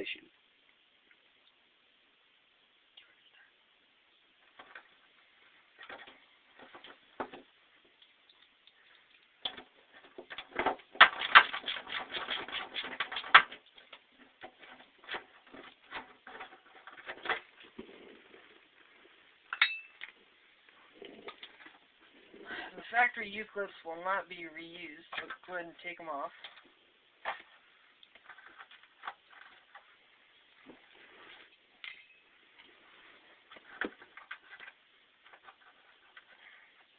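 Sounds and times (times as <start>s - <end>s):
hand tools clinking on metal: 19.5s - 20.1s, 31.8s - 32.3s.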